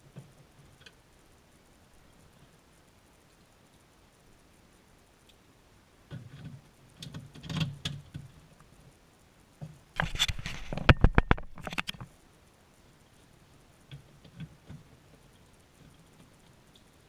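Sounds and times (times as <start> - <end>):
rapid clicks and knocks: 6.1 - 8.8, 9.6 - 12.1.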